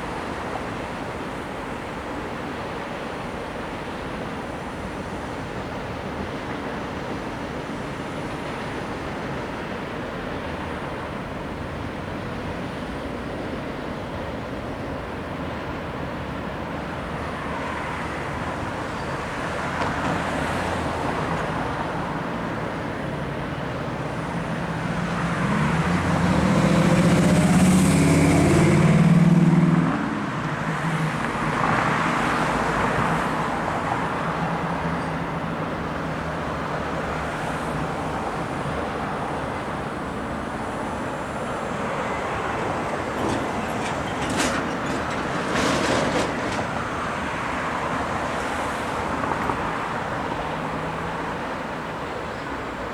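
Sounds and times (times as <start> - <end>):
road traffic passing: 0.0 - 52.9
heavy vehicle engine: 20.3 - 52.9.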